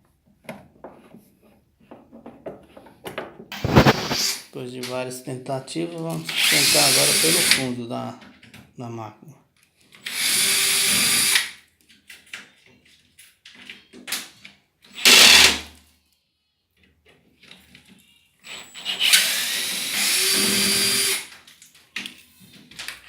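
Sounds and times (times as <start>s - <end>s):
power drill running: 3.6s - 4.4s, 6.2s - 7.6s, 10.0s - 11.5s, 14.9s - 15.7s, 18.4s - 21.4s.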